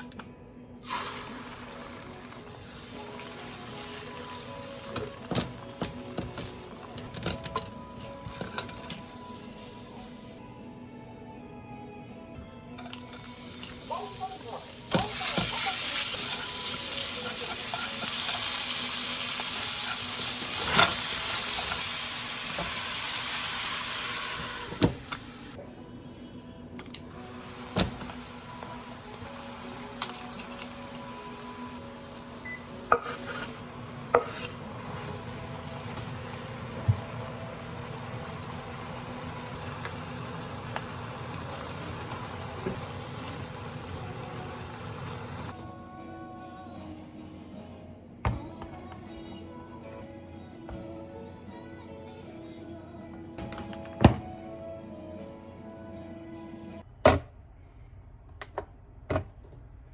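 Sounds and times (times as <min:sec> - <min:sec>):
food sizzling in a frying pan: 0:00.8 - 0:07.1, 0:13.0 - 0:25.6, 0:27.3 - 0:45.5.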